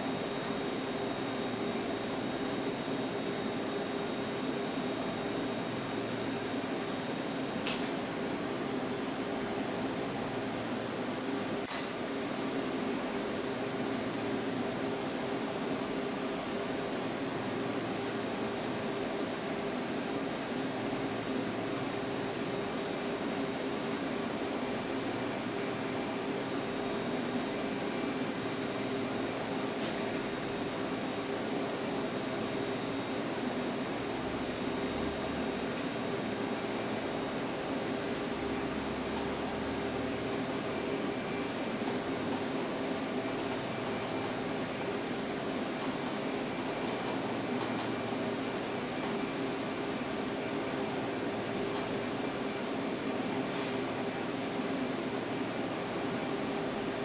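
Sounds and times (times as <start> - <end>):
welder high whine: 11.6 - 57.0.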